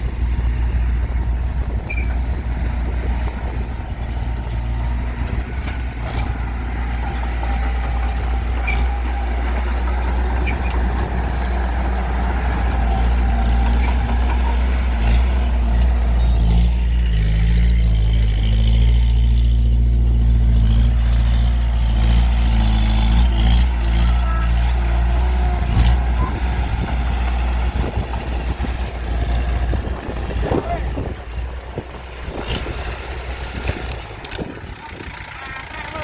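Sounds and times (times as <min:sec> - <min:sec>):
diesel machinery rumbling: 0:00.0 - 0:36.0.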